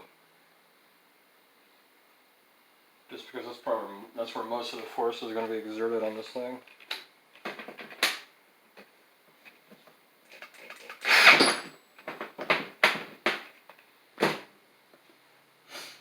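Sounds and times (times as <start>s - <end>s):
rough rattling burst: 11.0s - 11.7s.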